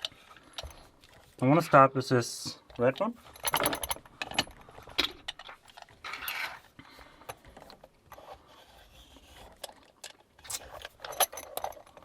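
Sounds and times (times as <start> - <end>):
lock-picking metal clicks and scrapes: 7.3 - 12.0.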